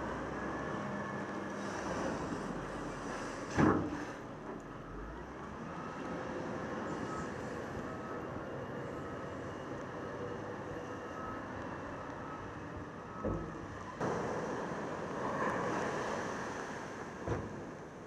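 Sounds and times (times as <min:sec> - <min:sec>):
ocean surf roaring: 0:14.0 - 0:17.8.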